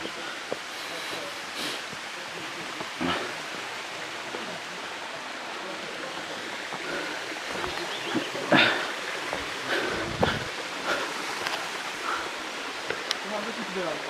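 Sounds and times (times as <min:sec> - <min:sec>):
faint voices: 0:00.0 - 0:11.1
waterfall rushing: 0:00.0 - 0:14.0.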